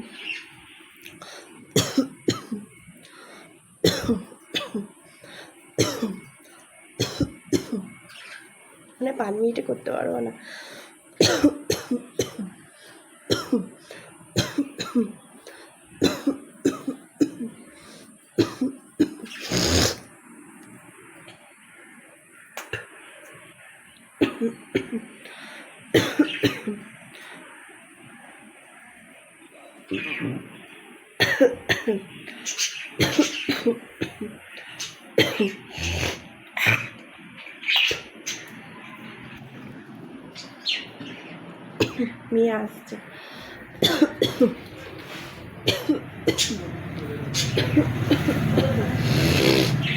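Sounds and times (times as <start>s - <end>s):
person coughing: 1.8s - 2.6s, 35.2s - 36.9s, 43.8s - 44.6s, 45.6s - 46.7s, 47.4s - 49.8s
woman coughing hard: 1.8s - 2.6s, 3.8s - 4.9s, 5.8s - 6.2s, 7.0s - 7.9s, 11.2s - 12.5s, 13.3s - 13.7s, 14.4s - 15.2s, 16.0s - 17.6s, 18.4s - 19.3s, 24.2s - 25.0s, 26.0s - 26.8s, 31.2s - 32.1s, 33.0s - 34.3s, 35.2s - 35.7s, 43.8s - 44.6s, 45.6s - 46.7s, 47.4s - 49.7s.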